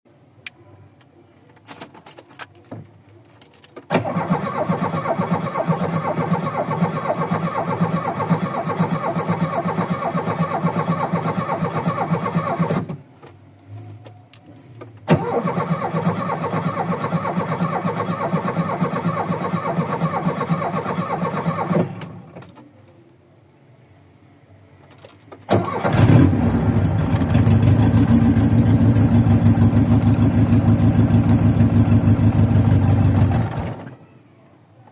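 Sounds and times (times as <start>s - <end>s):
engine starter cranking: 3.8s - 13.0s, 15.0s - 22.6s, 25.3s - 34.0s
engine running rough: 25.6s - 34.0s.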